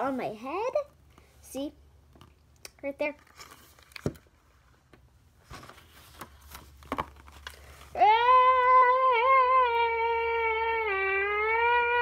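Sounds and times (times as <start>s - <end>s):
child screaming aaah: 8.0s - 12.0s.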